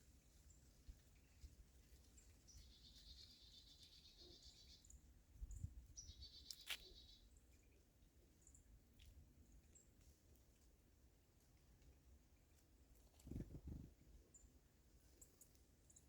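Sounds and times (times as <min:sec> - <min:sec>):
soft high bird chips: 0:06.2 - 0:07.1.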